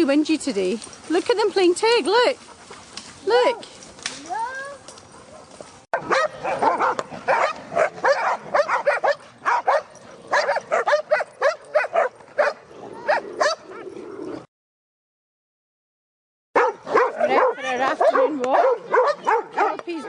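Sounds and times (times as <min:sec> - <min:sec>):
dogs yapping: 0:04.2 - 0:14.5, 0:16.6 - 0:20.0.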